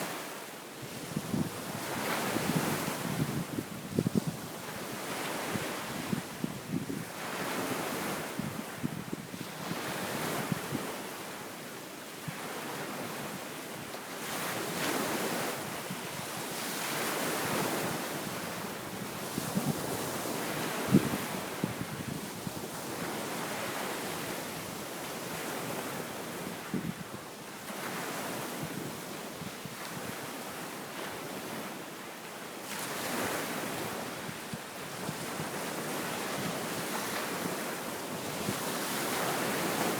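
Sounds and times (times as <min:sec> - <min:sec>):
waves breaking on beach: 0:00.0 - 0:39.9
wind buffeting microphone: 0:00.9 - 0:04.5.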